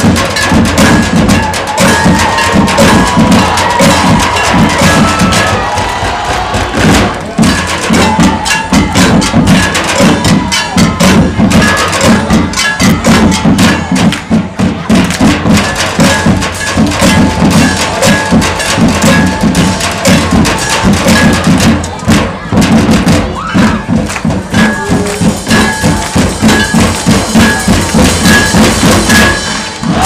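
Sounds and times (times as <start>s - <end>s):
marching band playing: 0.0s - 30.0s
rapid rhythmic drum strokes: 0.0s - 30.0s.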